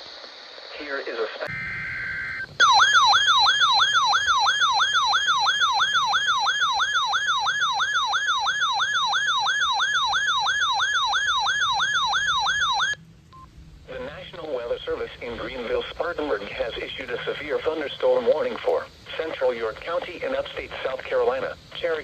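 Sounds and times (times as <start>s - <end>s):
electronic warbling siren: 1.5s - 13.0s.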